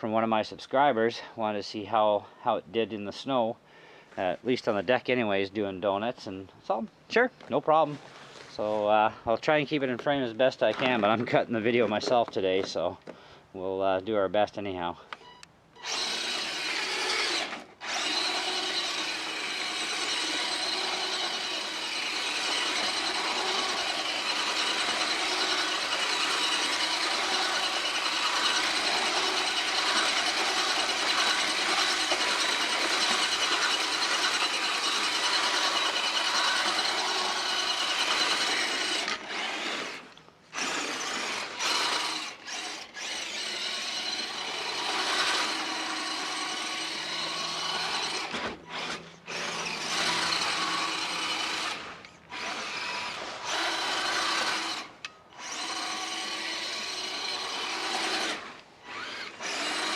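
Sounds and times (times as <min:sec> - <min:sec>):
electric motor whining: 0:15.8 - 0:59.9.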